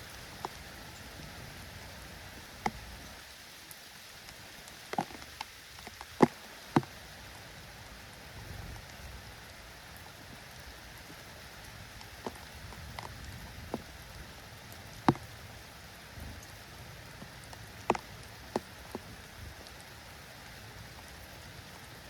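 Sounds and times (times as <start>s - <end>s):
light rain falling: 0.0s - 22.0s.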